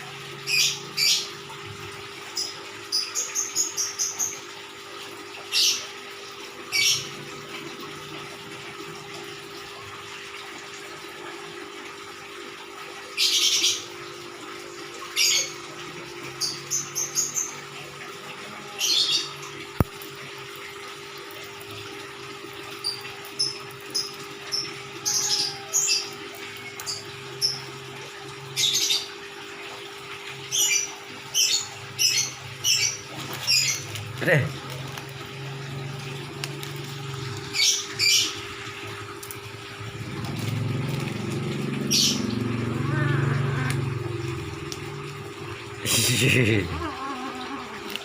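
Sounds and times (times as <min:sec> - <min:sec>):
small birds chirping: 0:30.5 - 0:34.6, 0:37.3 - 0:38.4, 0:40.0 - 0:43.7.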